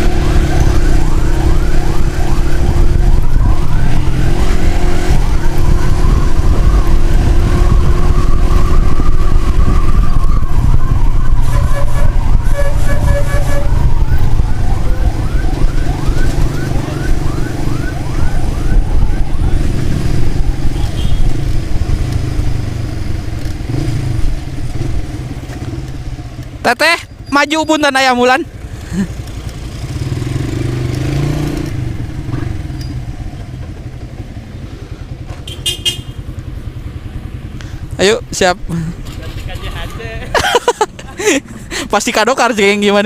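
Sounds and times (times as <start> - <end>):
emergency siren wailing and yelping: 0.0 - 21.0
wind noise: 0.0 - 25.0
motorcycle engine: 0.0 - 27.4, 28.5 - 41.6.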